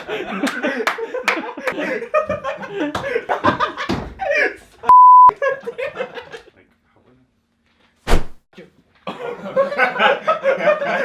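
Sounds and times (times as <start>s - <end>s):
loud steady beep: 4.9s - 5.3s
sharp thump: 8.1s - 8.4s.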